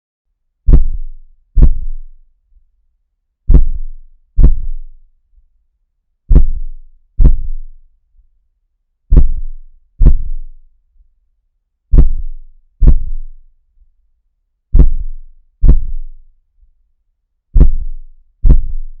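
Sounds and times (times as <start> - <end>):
heartbeat thumps: 0.7 - 2.1, 3.5 - 4.9, 6.3 - 7.7, 9.1 - 10.5, 11.9 - 13.3, 14.7 - 16.1, 17.5 - 19.0.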